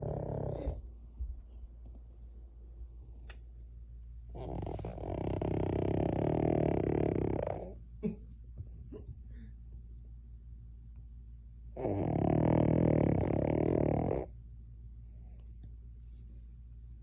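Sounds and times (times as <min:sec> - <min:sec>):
dog snoring: 0:00.0 - 0:00.9, 0:04.3 - 0:07.8, 0:11.7 - 0:16.1
dog snuffle: 0:00.0 - 0:00.9, 0:04.3 - 0:07.8.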